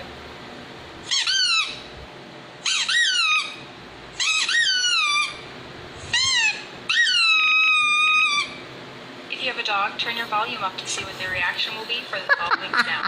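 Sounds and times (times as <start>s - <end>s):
squeaky toy squeaking: 1.1s - 1.9s, 2.6s - 3.6s, 4.2s - 5.4s, 6.0s - 8.6s.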